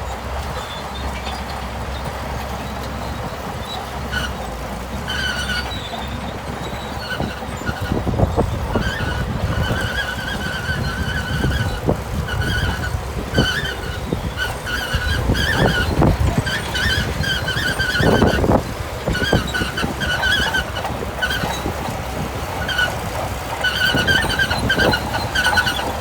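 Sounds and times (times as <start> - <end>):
bulldozer diesel engine running: 0.0 - 26.0
steel tracks squealing: 0.0 - 26.0.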